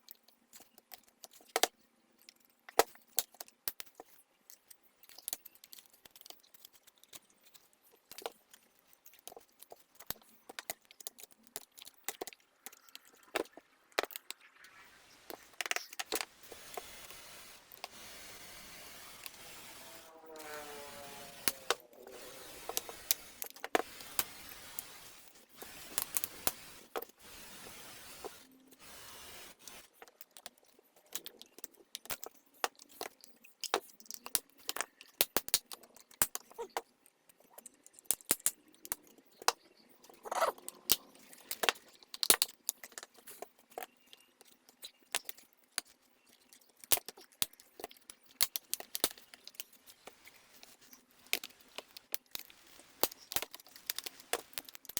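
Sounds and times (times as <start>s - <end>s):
plastic parts clicking and rattling: 0.0s - 14.5s, 29.6s - 54.9s
light steady hiss: 9.8s - 30.0s.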